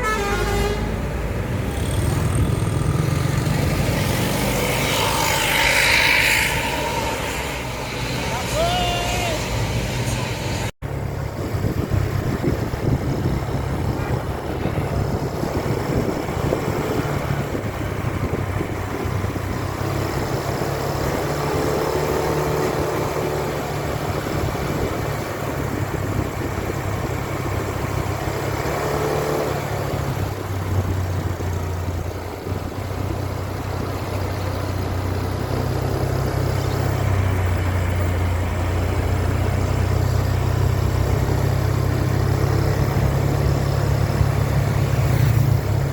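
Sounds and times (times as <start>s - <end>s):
vehicle engines droning: 0.0s - 45.9s.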